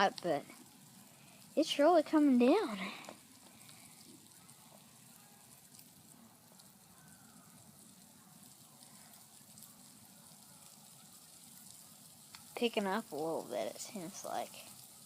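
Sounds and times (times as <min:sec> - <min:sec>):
faint outdoor hiss: 0:00.0 - 0:15.0
faint ticks: 0:03.0 - 0:04.4, 0:12.3 - 0:12.5.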